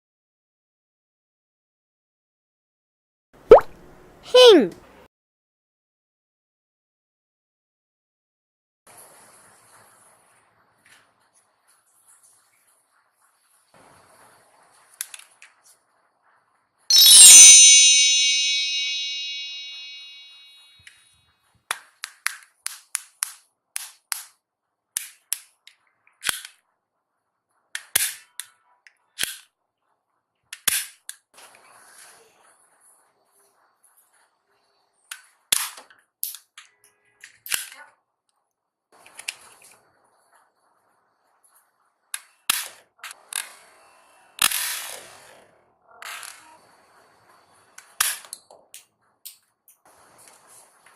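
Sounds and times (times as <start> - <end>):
bright chime: 16.9 - 20.7.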